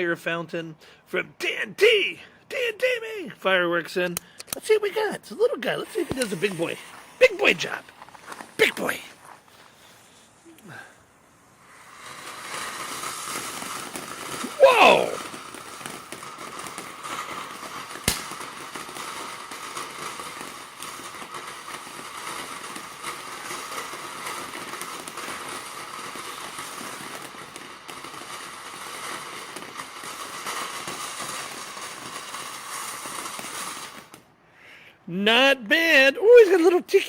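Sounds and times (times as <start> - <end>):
light crackling: 4.0 - 34.3
fountain firework hissing: 5.0 - 34.3
sharp pop: 18.0 - 18.5.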